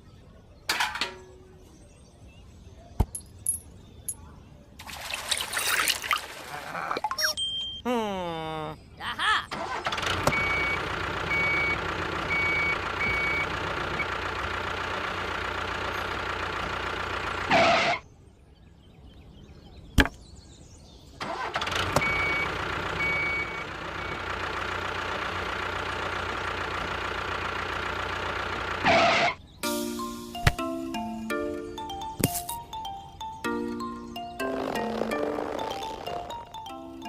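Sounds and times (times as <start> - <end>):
reversing beeps: 7.1 - 7.8, 10.3 - 13.5, 22.0 - 24.2
construction machine engine running: 9.6 - 18.0, 21.2 - 32.9.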